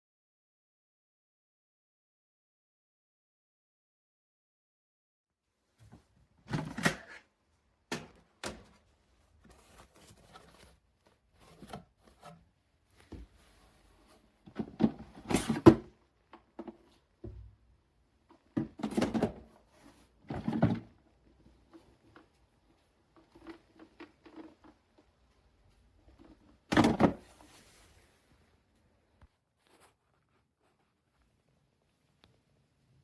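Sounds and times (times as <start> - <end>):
rustling: 8.6 - 14.4, 21.6 - 32.2.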